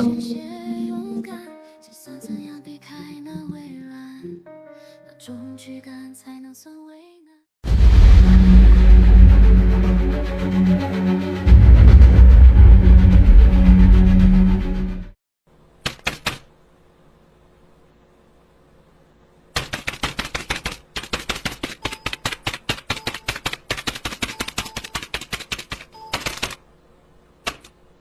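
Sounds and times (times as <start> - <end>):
rapid sharp typing clicks: 15.8 - 16.5, 19.5 - 26.6, 27.5 - 27.7.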